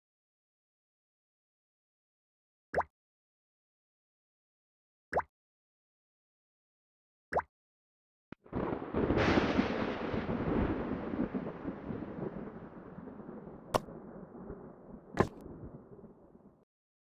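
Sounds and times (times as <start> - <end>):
sharp thunder cracks: 8.5 - 16.4
thunder rumbling: 8.5 - 16.6.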